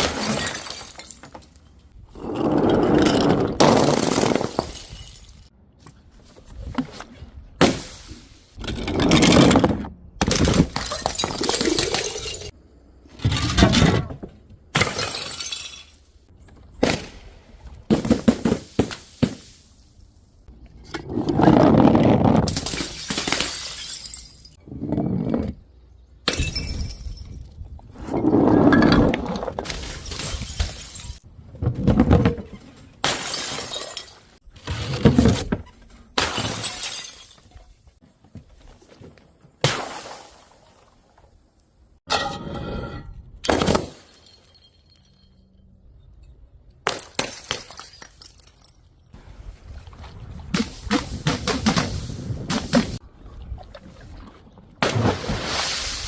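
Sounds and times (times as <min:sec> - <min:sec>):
glass bottles shattering: 0:00.0 - 0:01.8, 0:03.6 - 0:05.5, 0:10.3 - 0:12.6, 0:14.8 - 0:16.1, 0:22.5 - 0:24.6, 0:26.3 - 0:27.5, 0:28.7 - 0:31.2, 0:33.0 - 0:34.4, 0:36.2 - 0:37.7, 0:42.1 - 0:45.6, 0:46.9 - 0:49.1.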